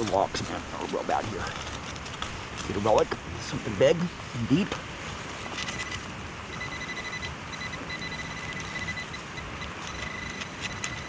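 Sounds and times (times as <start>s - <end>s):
rain hiss: 0.0s - 11.0s
pinpointer beeping: 5.4s - 11.0s
scraping clicks: 9.7s - 11.0s.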